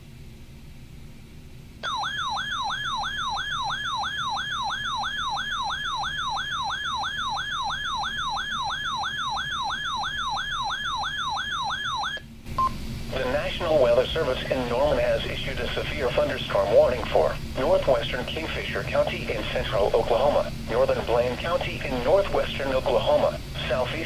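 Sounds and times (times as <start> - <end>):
warbling alarm siren: 1.8 - 12.2.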